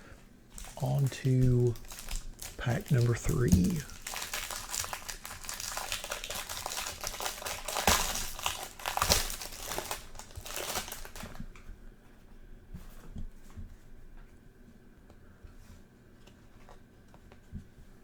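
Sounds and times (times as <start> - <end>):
plastic wrapper tearing and crinkling: 0.6 - 11.4
cards being handled: 0.7 - 4.0.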